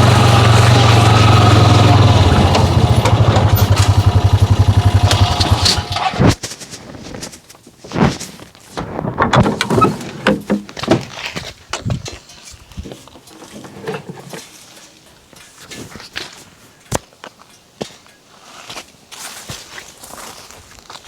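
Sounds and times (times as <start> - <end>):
engine idling and switching off: 0.0 - 6.2.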